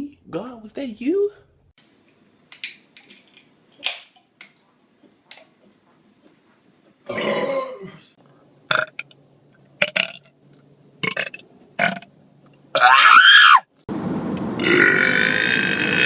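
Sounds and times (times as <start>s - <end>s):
man belching loudly: 7.1s - 8.0s, 14.6s - 16.0s.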